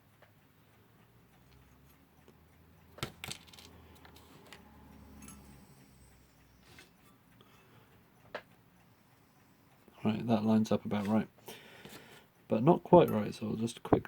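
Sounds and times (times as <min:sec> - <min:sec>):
small metal parts clicking: 0:02.9 - 0:04.6.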